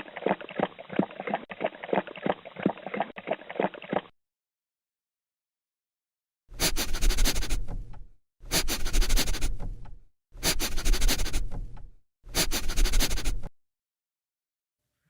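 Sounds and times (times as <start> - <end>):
dog sniffing: 6.6 - 7.6, 8.5 - 9.5, 10.4 - 11.5, 12.4 - 13.5.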